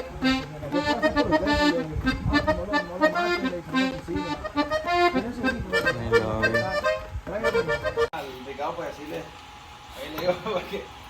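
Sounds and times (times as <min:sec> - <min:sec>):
bass line: 0:00.0 - 0:08.1
accordion playing quick notes: 0:00.0 - 0:08.2.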